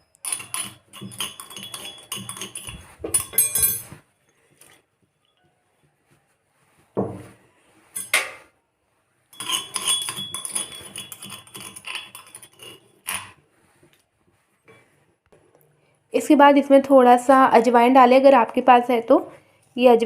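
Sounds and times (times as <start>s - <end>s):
metal spoon scraping a pot: 0.2s - 4.0s, 9.4s - 13.4s.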